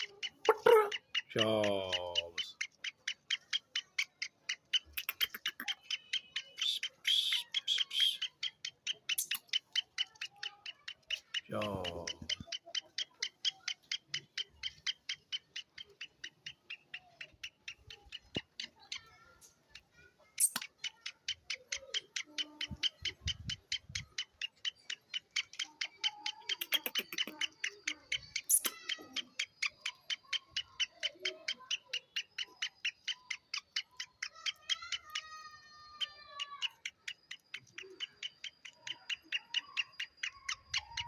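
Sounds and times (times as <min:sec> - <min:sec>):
bird calling in sharp high notes: 0:05.0 - 0:08.6.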